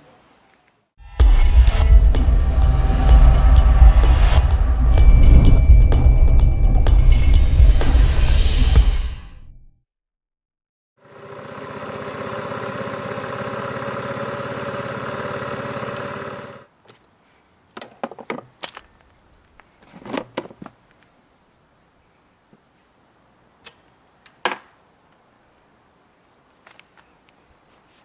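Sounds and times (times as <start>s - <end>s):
scooter engine idling: 11.0s - 16.7s.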